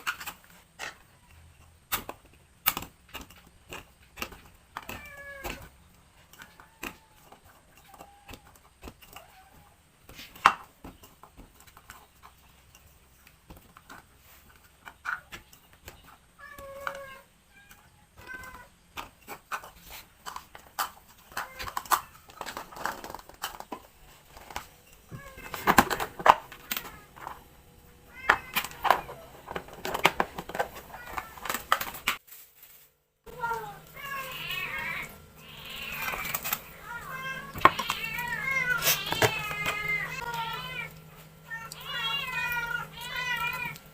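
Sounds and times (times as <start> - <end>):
cat meowing: 4.8 - 5.7, 16.4 - 18.7, 28.1 - 29.3, 33.3 - 43.9.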